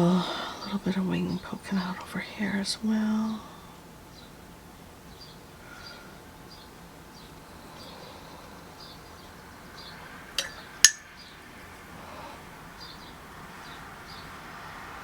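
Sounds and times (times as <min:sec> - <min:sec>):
paintbrush clinking against glass: 0:10.4 - 0:11.2.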